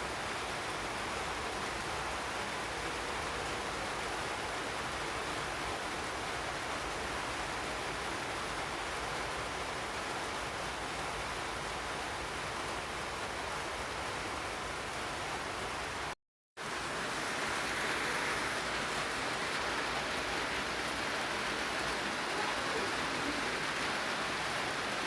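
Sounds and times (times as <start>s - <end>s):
steady broadband hiss: 16.7s - 25.0s.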